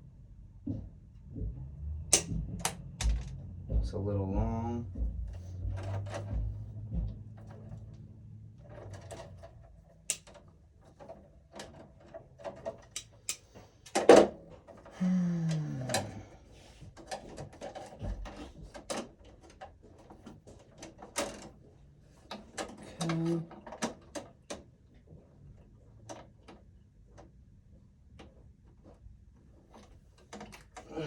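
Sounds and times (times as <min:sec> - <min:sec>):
hand tools clicking and knocking: 0:02.1 - 0:03.4, 0:08.7 - 0:10.4, 0:11.0 - 0:14.9.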